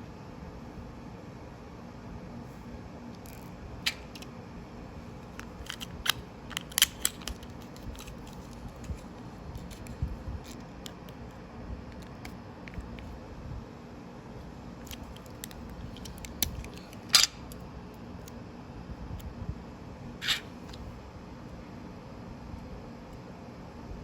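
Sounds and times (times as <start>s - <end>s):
low steady hum: 0.0s - 24.0s
plastic lego parts clicking: 5.4s - 8.9s.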